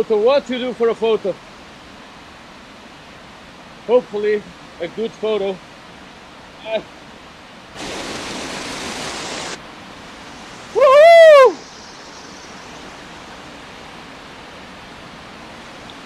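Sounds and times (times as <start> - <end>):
river rushing: 0.0 - 16.0
loud hiss: 7.7 - 14.0
short loud cry: 10.8 - 11.6.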